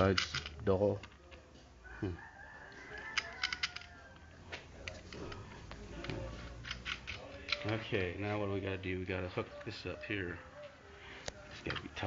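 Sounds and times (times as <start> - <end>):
metal hardware clicking: 2.9 - 4.0, 4.8 - 7.8.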